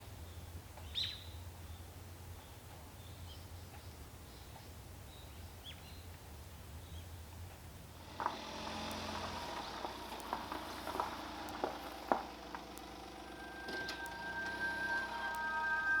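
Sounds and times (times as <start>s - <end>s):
campfire crackling and popping: 8.1s - 13.2s
music: 12.8s - 16.0s.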